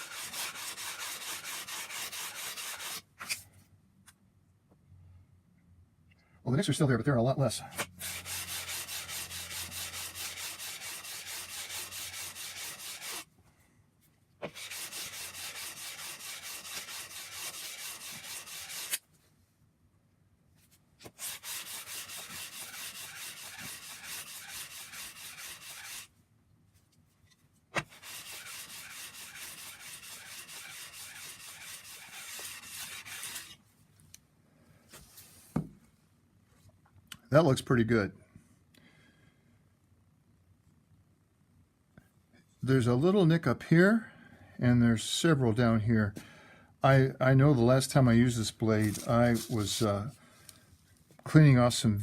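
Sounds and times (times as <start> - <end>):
knife scraping on sandpaper: 0.0 - 3.4, 7.8 - 13.3, 14.4 - 19.0, 21.0 - 26.1, 27.8 - 33.6, 48.6 - 50.2.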